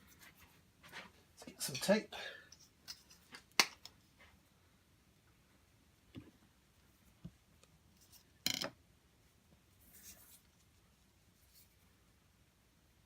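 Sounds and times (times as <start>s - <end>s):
soft tape rubbing: 9.7s - 12.0s.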